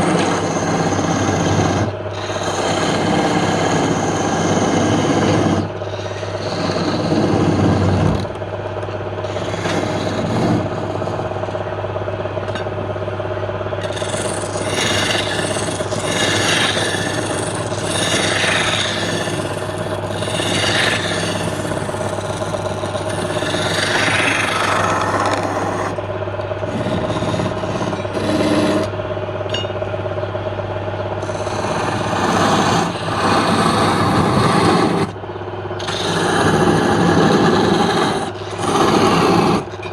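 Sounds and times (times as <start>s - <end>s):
tool rasping on spinning wood: 0.0s - 11.8s, 13.7s - 29.1s, 31.0s - 35.2s, 35.8s - 39.9s
wood lathe motor hum: 0.0s - 39.9s.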